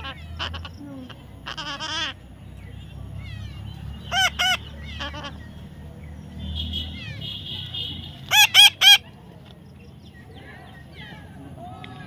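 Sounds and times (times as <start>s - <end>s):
parrot buzzy chatter: 0.0s - 5.9s, 6.8s - 9.2s
parrot squawking: 1.4s - 2.2s, 3.2s - 5.4s, 8.3s - 9.0s.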